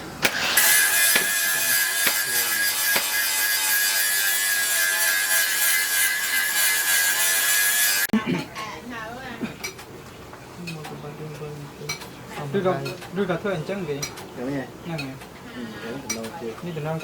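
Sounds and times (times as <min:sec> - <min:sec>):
electric grinder on steel: 0:00.0 - 0:08.1.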